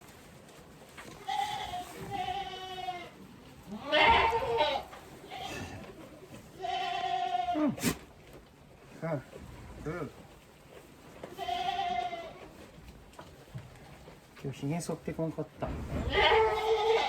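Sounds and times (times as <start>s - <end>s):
goat bleating: 1.1s - 8.0s, 11.2s - 12.6s, 16.0s - 17.0s.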